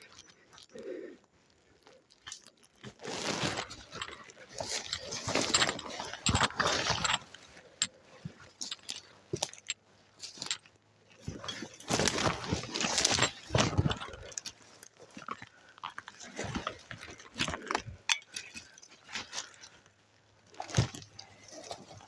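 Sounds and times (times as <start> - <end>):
footsteps crunching dry leaves: 2.5 - 7.4.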